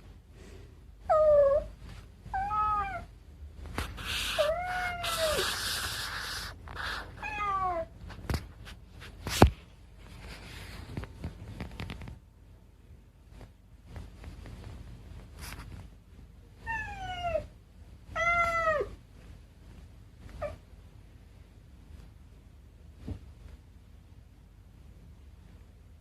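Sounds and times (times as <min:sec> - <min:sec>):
rustling: 0:01.3 - 0:12.3, 0:13.2 - 0:20.7
cat meowing: 0:02.4 - 0:03.1, 0:04.3 - 0:05.9, 0:07.2 - 0:07.9, 0:16.6 - 0:17.5, 0:18.1 - 0:19.0.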